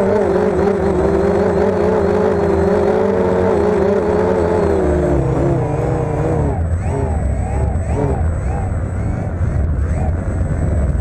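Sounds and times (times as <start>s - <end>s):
quadcopter propellers humming: 0.0s - 11.0s
wind rumbling on microphone: 5.0s - 11.0s.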